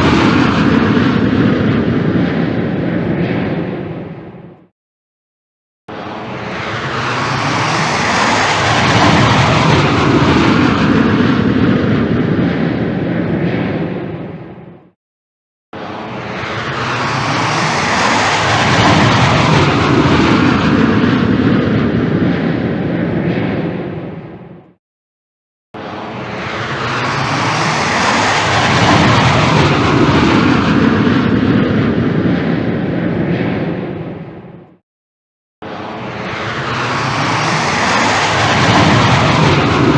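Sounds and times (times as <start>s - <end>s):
loud rushing jet engine: 0.0s - 4.7s, 5.9s - 15.0s, 15.8s - 24.8s, 25.8s - 34.8s, 35.6s - 39.9s.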